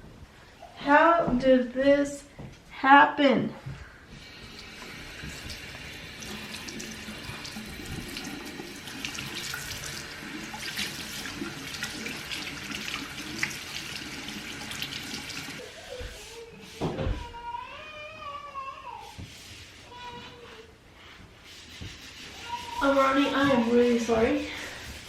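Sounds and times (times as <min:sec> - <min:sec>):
thump: 0:16.8 - 0:17.2.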